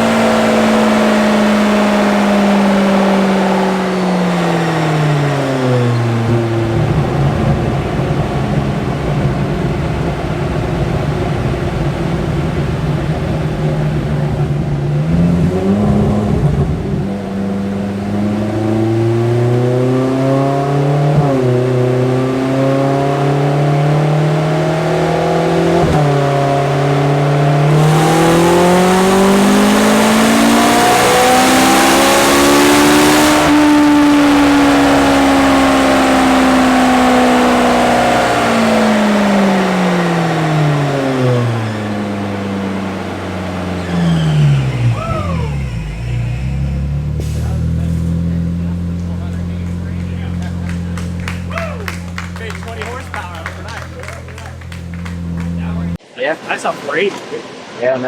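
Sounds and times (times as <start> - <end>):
car engine revving: 0.0 - 57.8.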